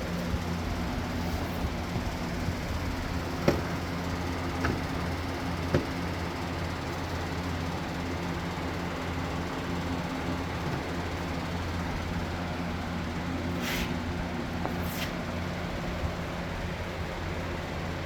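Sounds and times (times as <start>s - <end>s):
low mechanical hum: 0.0s - 18.0s
short high hisses: 13.5s - 14.0s, 14.8s - 15.2s.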